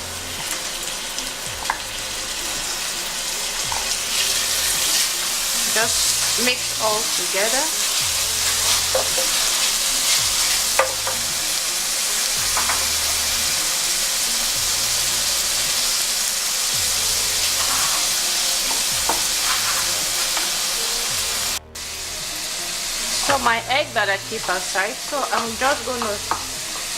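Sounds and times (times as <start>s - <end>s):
vegetables sizzling in oil: 0.0s - 26.9s
spatula scraping and knocking pot: 8.0s - 11.3s, 18.7s - 20.5s.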